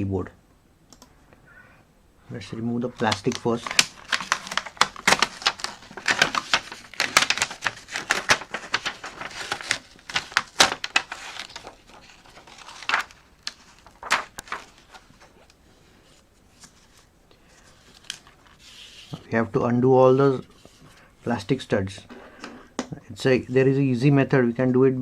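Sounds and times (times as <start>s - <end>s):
clicks: 0.9s - 1.4s
plastic film crinkling: 3.0s - 15.6s, 16.5s - 19.2s.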